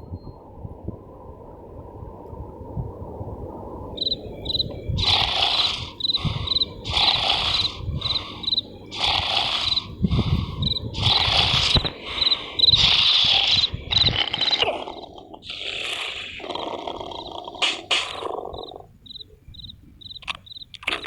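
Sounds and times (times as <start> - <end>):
high chirping whistles: 4.0 - 20.7
cartoon rasping snore: 5.0 - 19.0.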